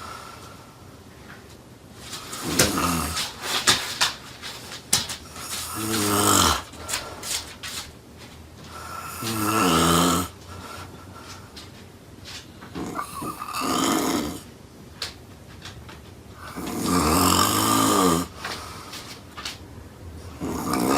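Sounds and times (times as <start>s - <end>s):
clicking snorts: 2.3s - 3.8s, 5.3s - 7.6s, 8.7s - 10.4s, 12.7s - 14.4s, 16.4s - 18.7s, 20.4s - 20.9s
loud snoring: 2.4s - 3.4s, 5.4s - 7.0s, 8.8s - 10.4s, 12.8s - 14.5s, 16.5s - 18.4s, 20.3s - 20.9s.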